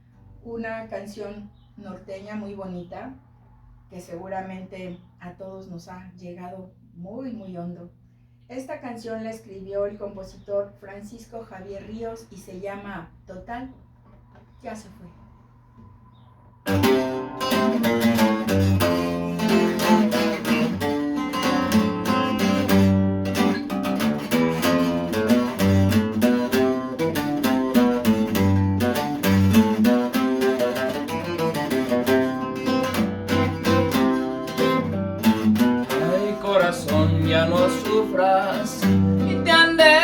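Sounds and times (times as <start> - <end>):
guitar picked and strummed: 16.7 - 40.0.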